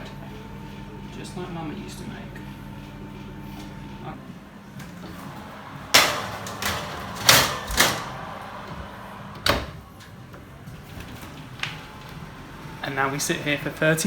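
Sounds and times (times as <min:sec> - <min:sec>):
kitchen knocks and clatters: 0:05.5 - 0:10.1.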